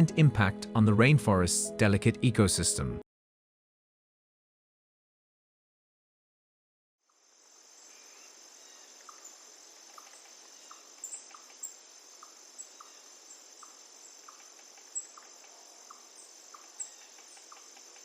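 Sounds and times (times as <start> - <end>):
insect short chirps: 7.0 - 18.0
insects trilling drone: 7.0 - 18.0.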